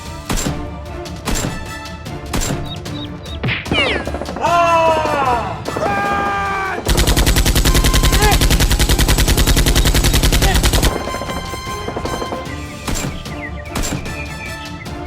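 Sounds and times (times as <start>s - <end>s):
rapid automatic gunfire: 3.7s - 13.2s.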